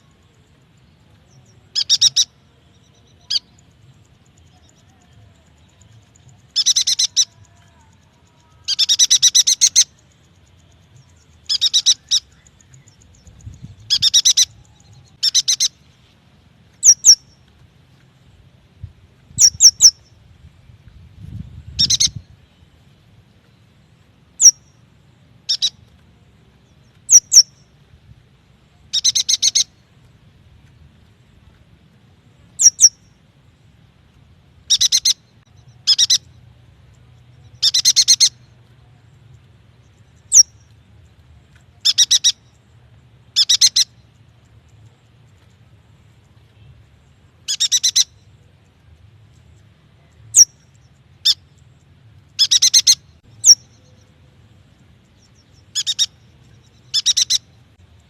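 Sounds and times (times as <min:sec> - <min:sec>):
bird chirping bursts: 0:01.3 - 0:04.8, 0:05.7 - 0:07.6, 0:08.6 - 0:15.9, 0:16.8 - 0:17.4, 0:19.4 - 0:20.2, 0:21.7 - 0:22.7, 0:24.4 - 0:24.8, 0:25.4 - 0:25.8, 0:26.8 - 0:27.8, 0:28.8 - 0:29.8, 0:32.6 - 0:33.2, 0:34.6 - 0:36.4, 0:37.4 - 0:38.6, 0:39.9 - 0:40.7, 0:41.8 - 0:42.7, 0:43.3 - 0:44.2, 0:47.4 - 0:48.4, 0:52.3 - 0:54.1, 0:55.0 - 0:57.8.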